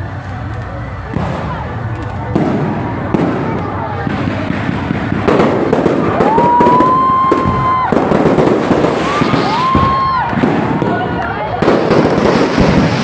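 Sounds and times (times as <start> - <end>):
fireworks crackling and banging: 0.0 - 13.0
rising firework whistle: 0.7 - 13.0.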